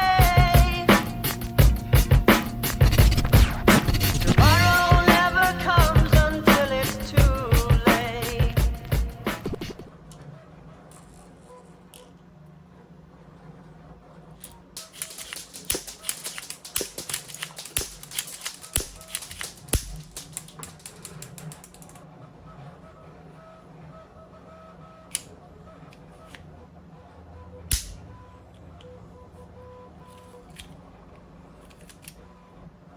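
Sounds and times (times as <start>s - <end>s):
sharp plastic clicks: 14.4s - 22.1s, 27.7s - 28.1s
loud single clicks: 27.7s - 28.0s.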